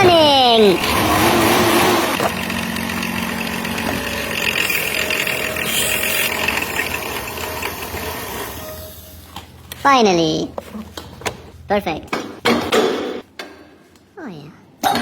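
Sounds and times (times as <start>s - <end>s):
car engine idling: 2.1s - 8.1s.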